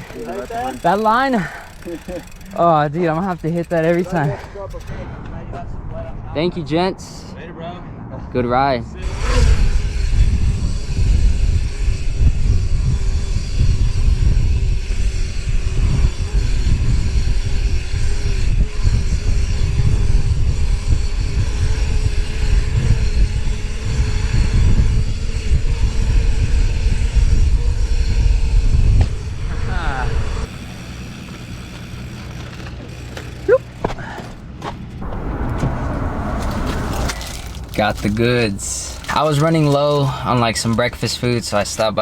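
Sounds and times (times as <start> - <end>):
low road rumble: 34.4 - 41.9.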